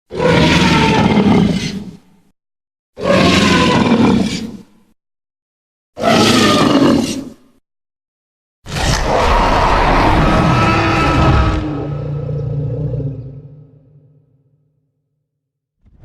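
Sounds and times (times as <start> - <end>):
monster roar: 3.0 - 4.6, 8.7 - 13.7.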